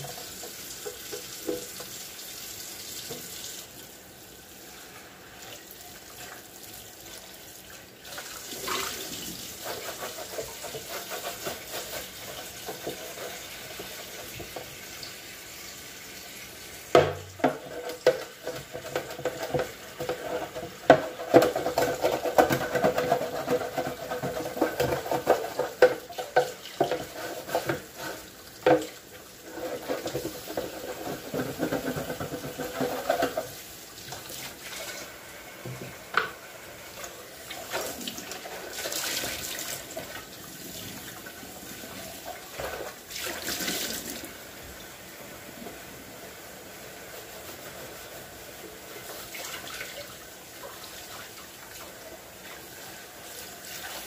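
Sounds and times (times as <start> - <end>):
tap water running into sink: 0.0 - 4.0, 5.4 - 44.9
hard items clattering against sink: 17.0 - 33.6.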